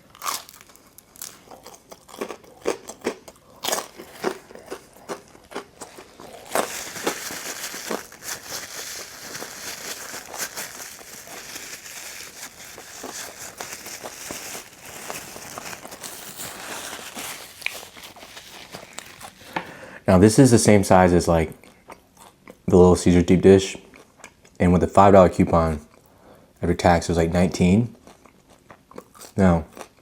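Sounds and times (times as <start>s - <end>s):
chewing crunchy pizza: 0.0s - 19.6s, 21.5s - 22.7s, 27.9s - 30.0s
crackling rustle: 3.6s - 19.6s.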